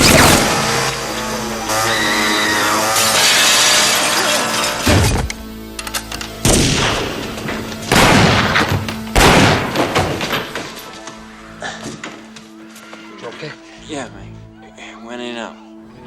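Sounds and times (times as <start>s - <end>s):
dramatic music: 0.0s - 16.0s
heavy gunshots echoing: 6.5s - 11.0s
glass crashing and breaking: 7.9s - 11.1s.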